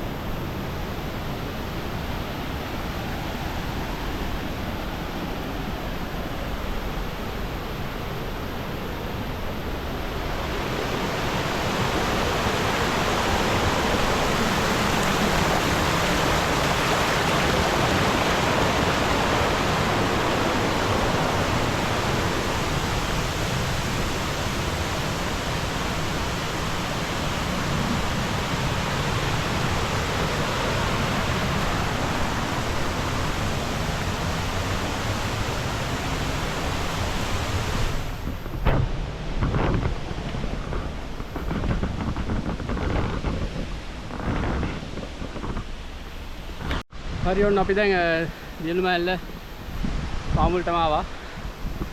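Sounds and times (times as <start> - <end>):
waterfall rushing: 7.3 - 38.4.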